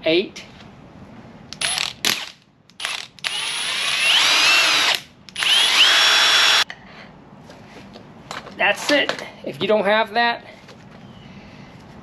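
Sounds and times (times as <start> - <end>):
impact driver whining: 1.6 - 6.6.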